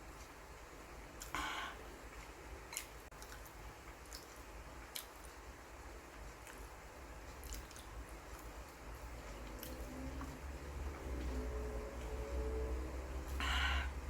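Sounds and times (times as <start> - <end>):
person chewing and biting: 7.4 - 8.5.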